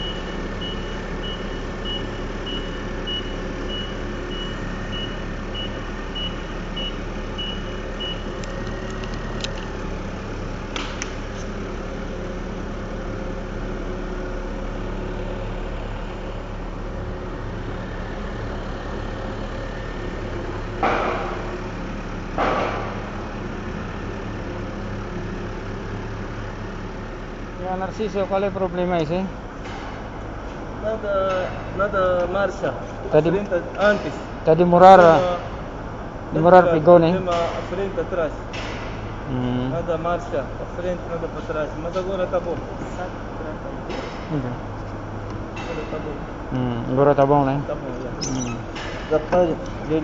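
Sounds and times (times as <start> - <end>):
reversing alarm beeping: 0.0 - 8.4, 48.2 - 48.7
heavy machine engine idling: 0.0 - 50.0.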